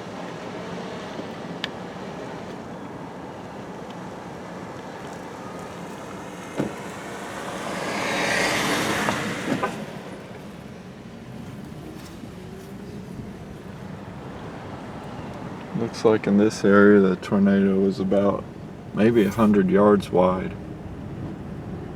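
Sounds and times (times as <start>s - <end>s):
car driving slowly: 0.0s - 21.9s
rush of noise: 19.0s - 20.6s.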